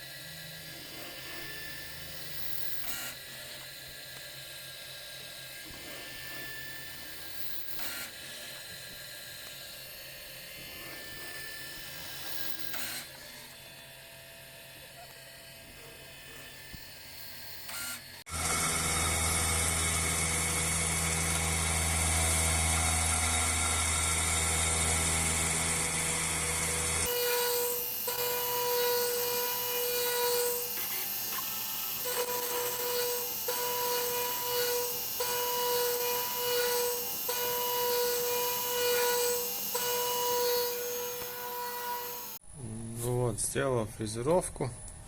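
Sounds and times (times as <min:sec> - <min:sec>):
ringing cutter on metal: 0:00.0 - 0:42.4
milling machine motor humming: 0:17.7 - 0:42.4.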